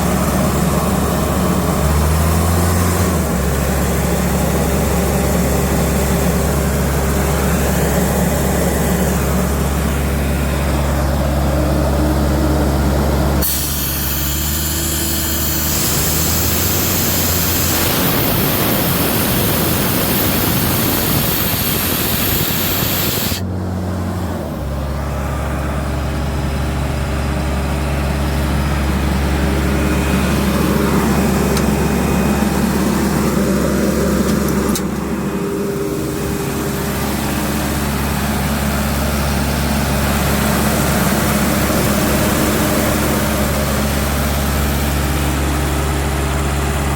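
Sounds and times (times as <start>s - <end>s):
diesel engine running: 0.0s - 46.9s
compressed air hissing: 13.4s - 23.4s.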